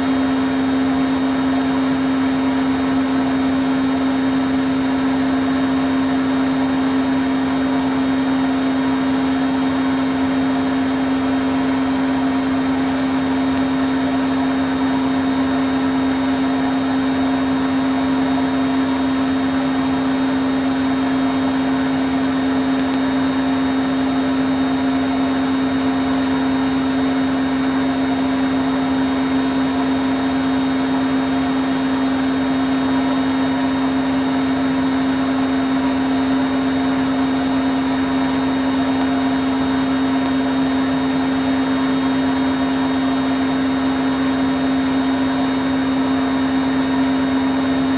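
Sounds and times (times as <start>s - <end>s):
washing machine spinning: 0.0s - 47.9s
steady hum tone: 36.4s - 47.9s.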